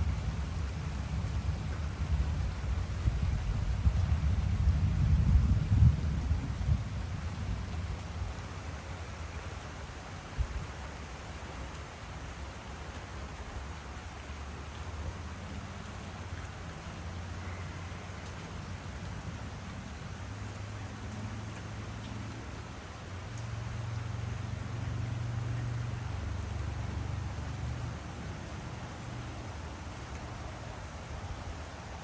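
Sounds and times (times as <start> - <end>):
thunder rumbling: 0.0 - 8.6
rain hiss: 0.0 - 32.0.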